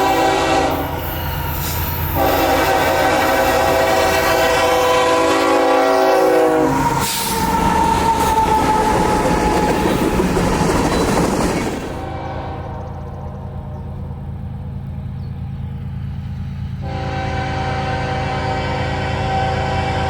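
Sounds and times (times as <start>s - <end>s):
locomotive air horn: 0.0s - 10.1s, 12.0s - 13.8s, 16.8s - 20.0s
freight train rumble: 0.0s - 20.0s.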